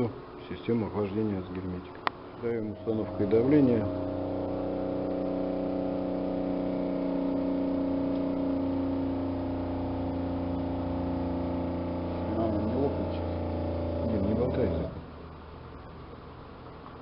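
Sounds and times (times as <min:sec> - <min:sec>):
small electric motor humming: 0:02.7 - 0:14.9.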